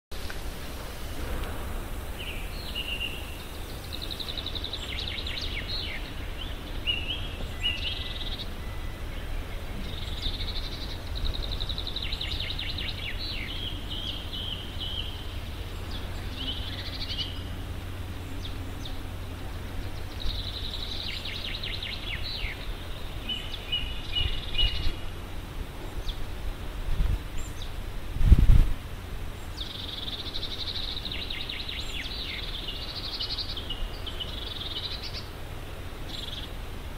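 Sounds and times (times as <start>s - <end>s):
steady low rumble: 0.1s - 36.9s
songbirds trilling and chirping: 0.2s - 28.1s, 28.9s - 36.9s.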